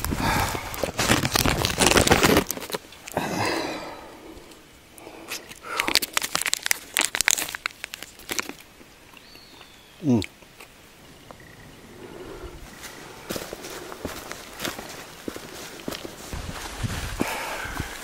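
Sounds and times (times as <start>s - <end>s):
close rustling and crinkling: 0.0s - 3.2s, 5.4s - 8.7s, 12.7s - 18.0s
sharp clicks and crunches: 0.0s - 3.2s, 4.4s - 9.3s.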